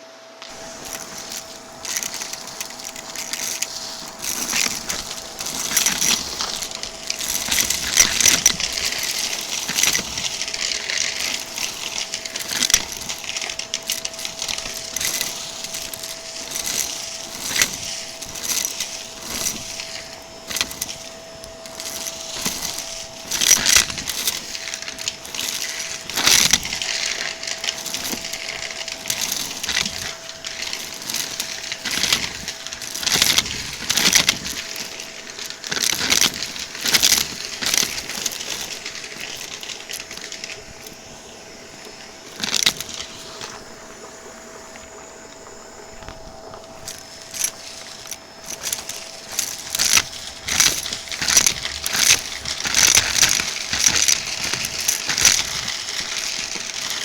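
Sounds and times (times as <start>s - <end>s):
vacuum cleaner motor whine: 0.0s - 57.0s
debris crackling up vacuum hose: 0.4s - 57.0s.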